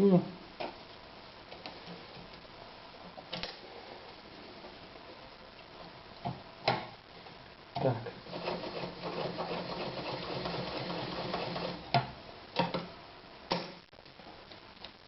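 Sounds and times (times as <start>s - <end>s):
sewing machine stitching: 8.3s - 11.8s.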